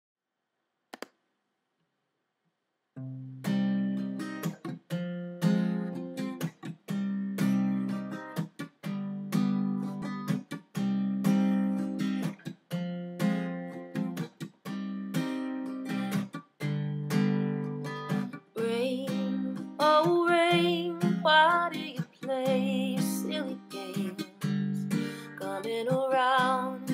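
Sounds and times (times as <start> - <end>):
acoustic guitar strumming chords: 3.0 - 26.9
person singing: 18.6 - 26.9.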